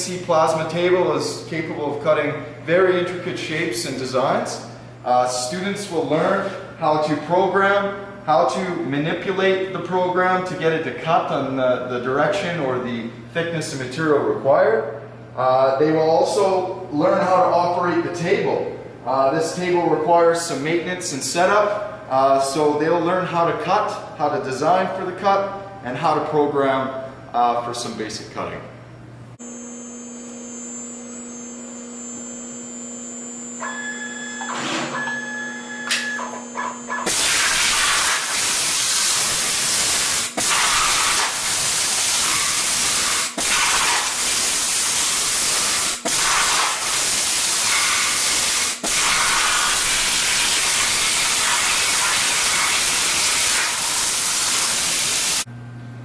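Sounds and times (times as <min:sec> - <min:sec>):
machine hum: 0:28.6 - 0:56.0
plasma torch hissing: 0:37.1 - 0:55.4.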